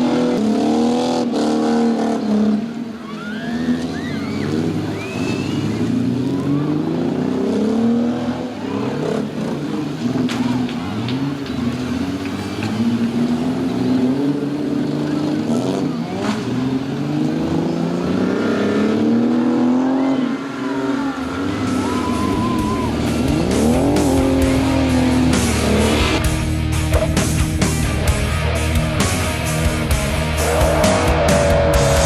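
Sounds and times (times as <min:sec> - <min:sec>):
car engines revving: 0:00.0 - 0:32.0
rock music: 0:20.7 - 0:32.0.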